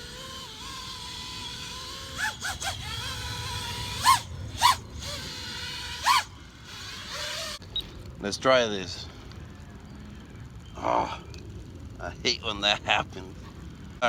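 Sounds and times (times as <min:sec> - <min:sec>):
drone motor rev blips: 0:00.0 - 0:07.9
drone motors whining: 0:00.0 - 0:08.0.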